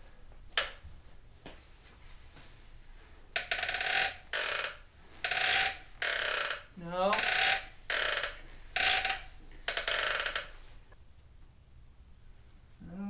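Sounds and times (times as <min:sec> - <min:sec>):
suspension linkage creaking: 0:03.4 - 0:10.7.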